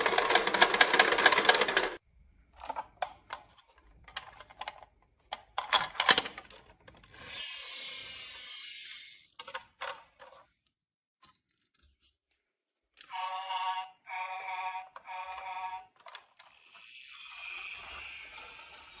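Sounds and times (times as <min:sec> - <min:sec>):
marbles rolling on wooden track: 0:00.0 - 0:02.0, 0:16.2 - 0:19.0.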